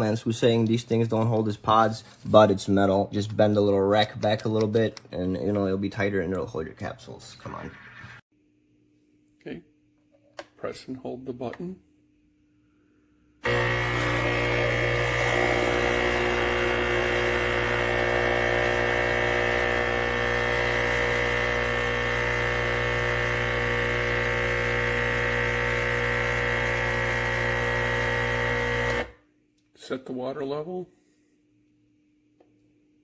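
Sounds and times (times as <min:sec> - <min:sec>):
espresso machine pump humming: 0:13.4 - 0:29.2.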